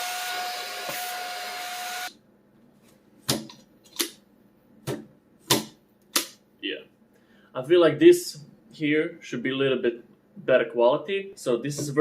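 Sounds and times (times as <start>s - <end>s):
handheld vacuum whining: 0.0s - 2.1s.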